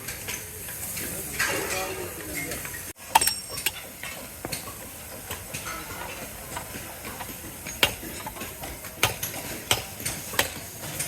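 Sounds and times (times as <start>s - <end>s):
steady machine hiss: 0.0s - 11.0s
sharp clicks and knocks: 2.6s - 11.0s.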